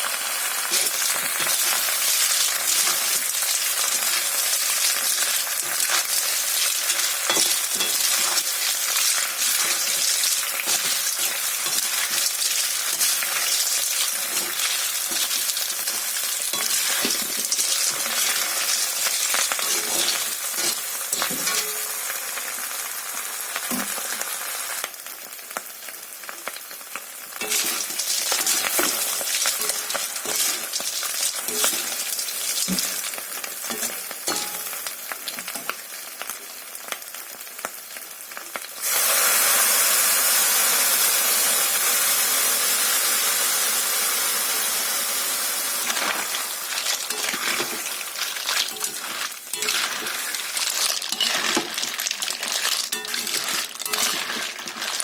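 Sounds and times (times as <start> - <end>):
food sizzling in hot oil: 0.0 - 55.0
utensil scraping a pan: 4.9 - 22.0, 27.4 - 33.1, 45.9 - 55.0.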